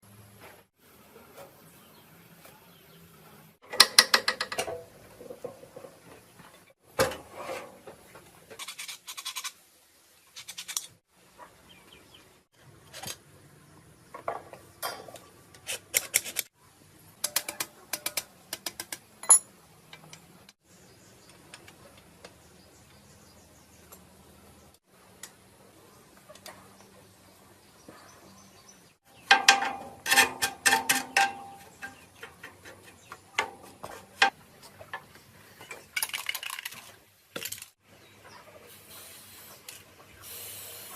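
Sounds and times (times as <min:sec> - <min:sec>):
metal tools clattering: 0:19.2 - 0:19.5, 0:29.3 - 0:34.3.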